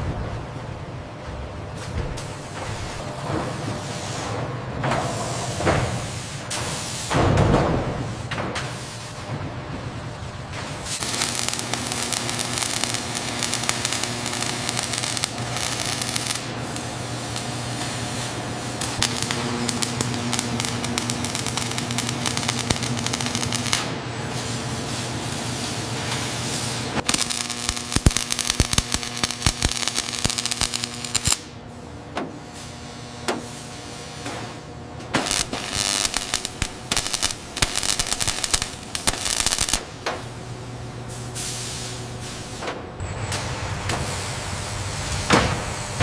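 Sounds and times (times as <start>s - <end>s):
low machinery hum: 0.0s - 46.0s
machinery hissing: 10.8s - 31.5s, 35.2s - 40.0s
sharp crackling clicks: 27.1s - 31.4s, 35.2s - 39.8s.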